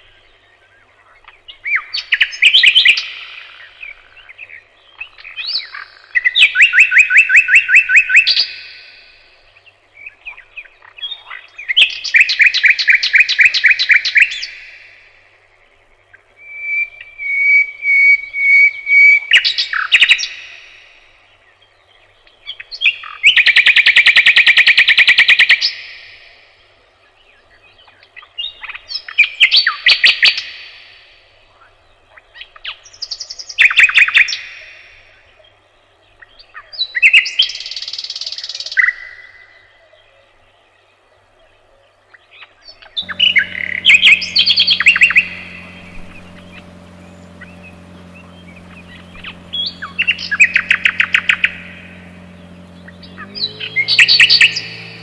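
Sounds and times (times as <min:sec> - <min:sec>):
songbird singing: 0:40.0 - 0:55.0.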